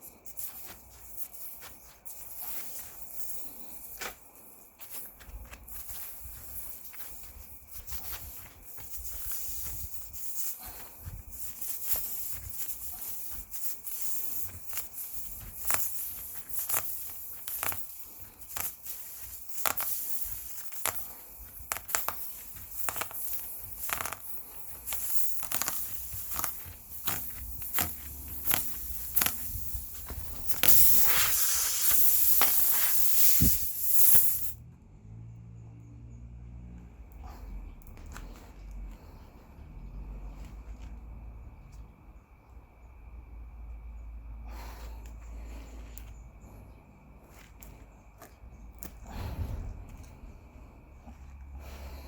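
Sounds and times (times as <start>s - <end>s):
hand tools clicking and knocking: 0.0s - 34.6s
loud air hiss: 24.9s - 34.6s.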